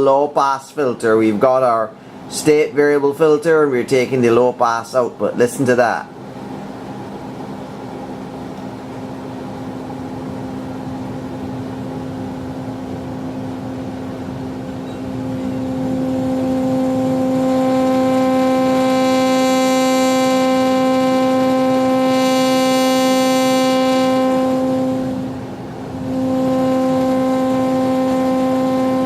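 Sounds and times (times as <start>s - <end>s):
synthesizer tone with hissy noise: 13.1s - 29.0s.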